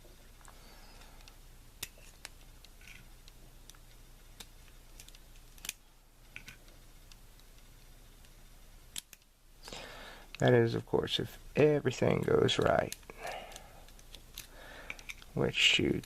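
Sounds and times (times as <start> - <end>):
small metal lock parts clicking: 4.4 - 5.8, 13.8 - 15.3.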